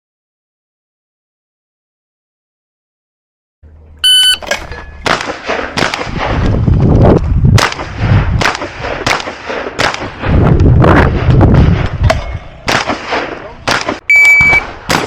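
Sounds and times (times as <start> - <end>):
shot timer beep: 4.0 - 4.6, 14.1 - 14.7
shotgun shots: 4.2 - 6.5, 7.6 - 10.4, 12.6 - 15.0.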